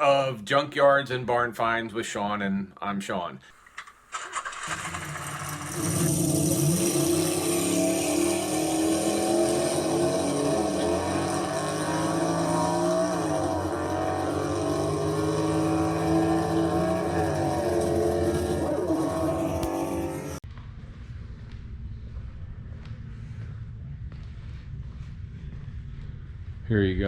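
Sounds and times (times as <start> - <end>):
engine running hard: 4.4 - 20.4.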